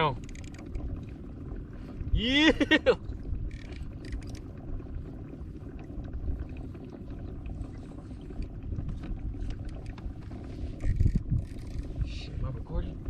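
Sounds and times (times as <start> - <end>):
water lapping: 0.0 - 13.0
wind rumble on microphone: 0.0 - 13.0
faint clicks and knocks: 0.2 - 1.1, 3.5 - 4.6, 7.6 - 11.9.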